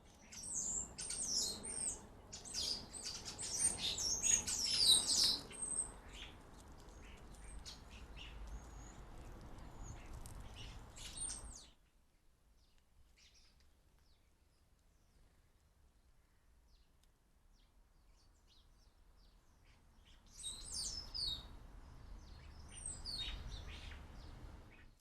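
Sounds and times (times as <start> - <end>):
small birds chirping: 0.0 - 25.0.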